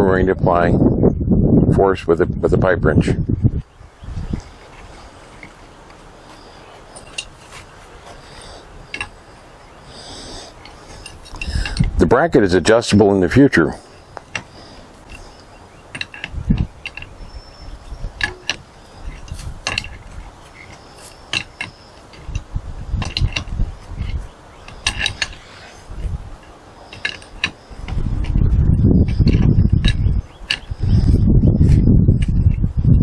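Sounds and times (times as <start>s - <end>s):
low rumbling: 0.0s - 33.0s
pipe wrench clicking and clanking: 8.9s - 9.2s, 10.6s - 12.0s, 14.2s - 28.4s, 29.0s - 30.9s.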